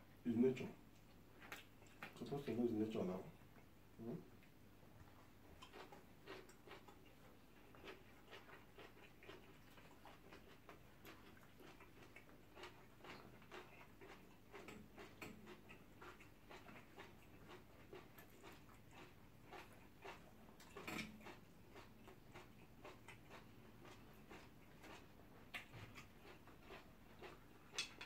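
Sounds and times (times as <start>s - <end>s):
people chewing and eating: 0.1s - 28.0s.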